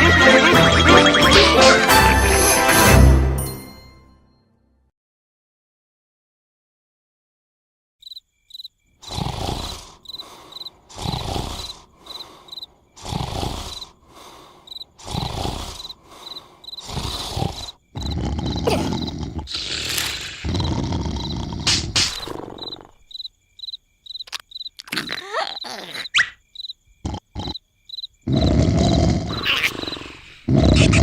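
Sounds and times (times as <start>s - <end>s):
cricket chirps: 8.0s - 31.0s
cartoon character snoring: 9.0s - 23.1s, 24.8s - 26.2s, 27.0s - 27.6s, 28.2s - 31.0s.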